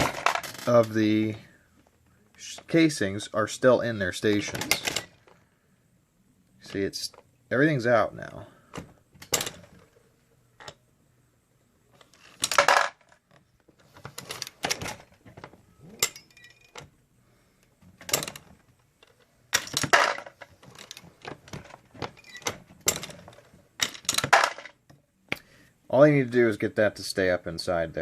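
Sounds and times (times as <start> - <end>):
metallic clicks and clanks: 0.0 - 1.1, 4.3 - 5.4, 14.0 - 16.9, 17.7 - 25.4.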